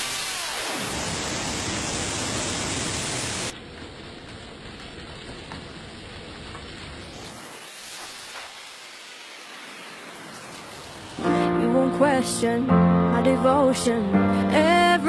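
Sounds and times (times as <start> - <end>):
water spraying onto a car: 0.0 - 11.4.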